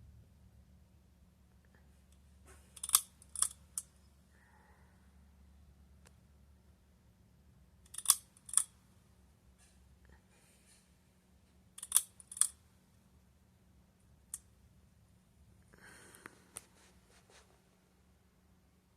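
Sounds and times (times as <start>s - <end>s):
pull-chain switch clicks: 2.8s - 3.9s, 7.9s - 8.7s, 11.8s - 12.6s.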